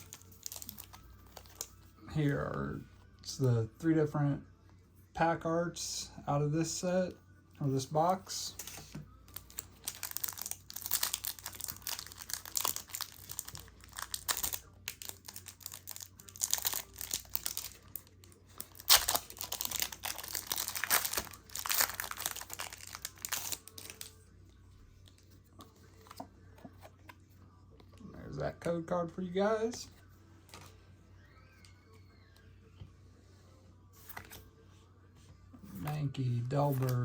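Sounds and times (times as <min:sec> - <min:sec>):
foil pack crinkling: 0:09.3 - 0:24.2.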